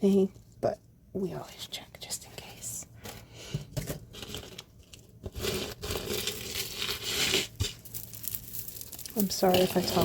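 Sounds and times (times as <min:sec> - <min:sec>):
plastic packaging crinkling: 0:04.0 - 0:10.0.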